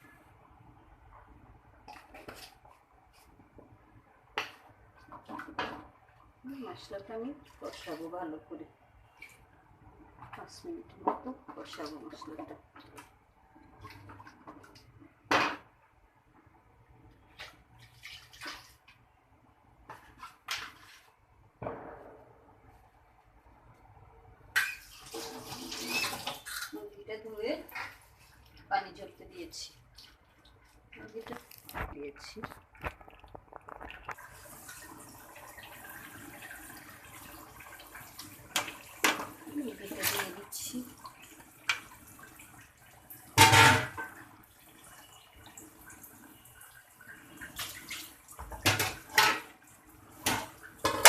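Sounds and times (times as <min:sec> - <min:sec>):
chicken sizzling in hot oil: 0:24.7 - 0:26.6.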